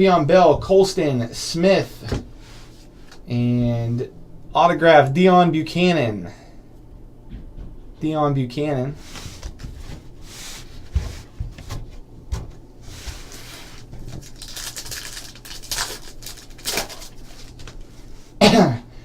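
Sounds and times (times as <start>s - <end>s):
faint steady hum: 0.0s - 19.0s
cards and wrappers rustling: 12.9s - 18.1s.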